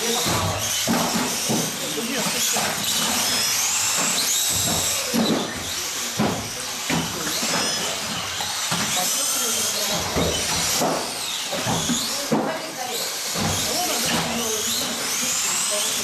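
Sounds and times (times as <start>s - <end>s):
rc car motors whining: 0.0s - 16.0s
knocks and clatter: 0.2s - 9.0s.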